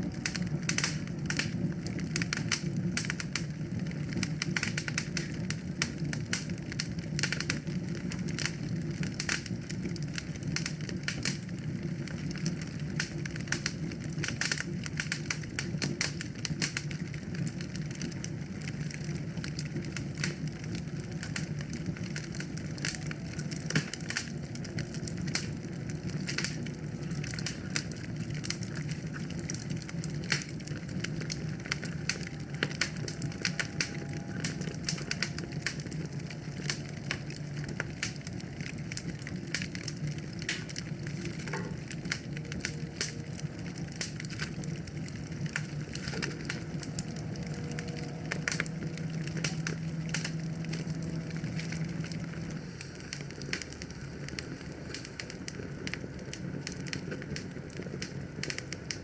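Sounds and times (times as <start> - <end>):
low rumble of flames: 0.0 - 59.0
wood fire crackling and popping: 0.0 - 59.0.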